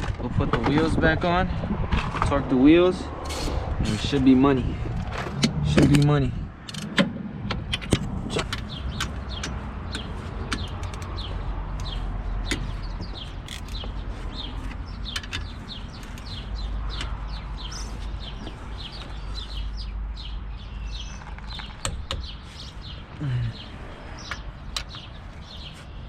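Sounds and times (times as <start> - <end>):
steady low rumble: 0.0 - 25.4
sharp clicks: 5.3 - 13.9
small birds chirping: 7.7 - 26.0.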